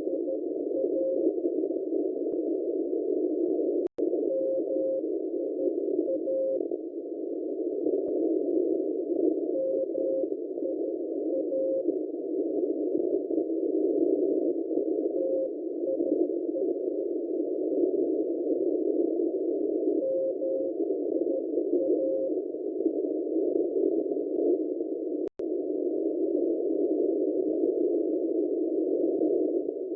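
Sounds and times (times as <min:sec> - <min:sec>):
faint morse code tone: 0:00.0 - 0:25.6
radio receiver hiss: 0:00.0 - 0:29.9.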